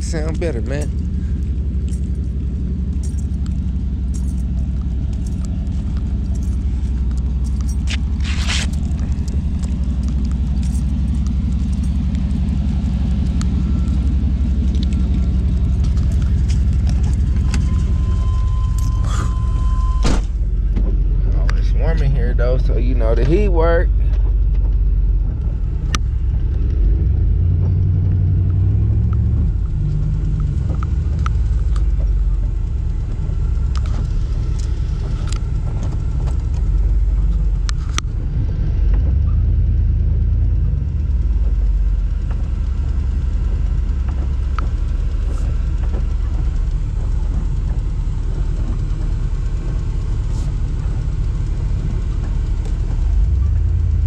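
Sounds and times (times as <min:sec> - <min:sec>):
vehicle engine low rumble: 0:00.0 - 0:54.0.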